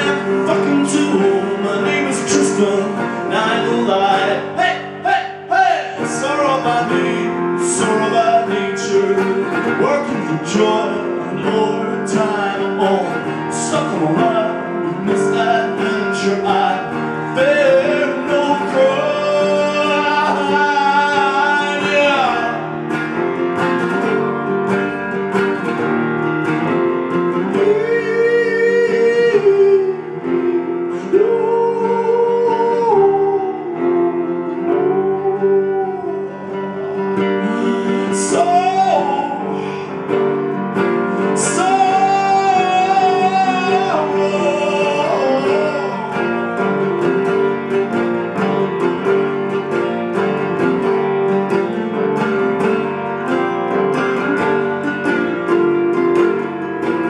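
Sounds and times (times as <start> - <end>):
person singing wordless melody: 0.0 - 22.9, 27.2 - 49.6
strummed guitar: 0.0 - 57.0.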